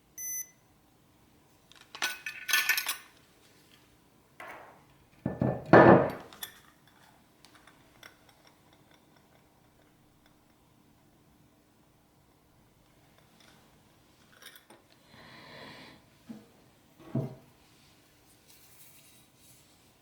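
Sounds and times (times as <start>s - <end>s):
hard objects clinking and knocking: 4.4s - 6.4s.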